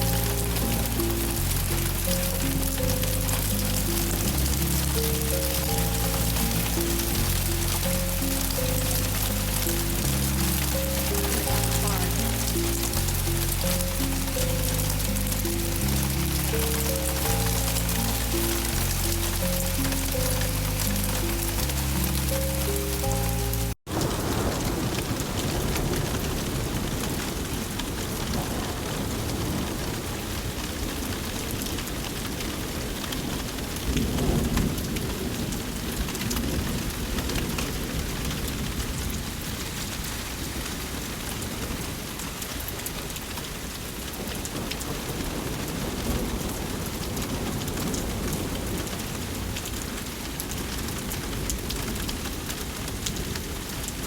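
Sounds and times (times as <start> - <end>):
steady rain falling: 0.0 - 54.0
low rumble of thunder: 23.9 - 40.6, 44.3 - 53.8.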